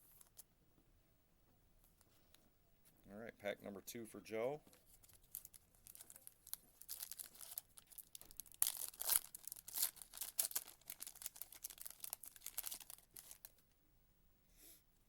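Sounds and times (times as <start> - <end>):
foil wrapper crinkling: 4.7 - 13.6.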